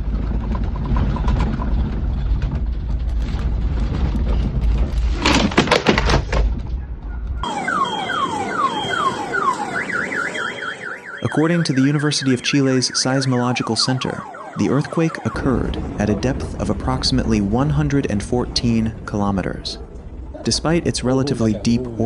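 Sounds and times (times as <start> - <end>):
earthquake rumbling and rattling: 0.0 - 7.5, 14.5 - 22.0
car alarm siren: 7.4 - 18.0.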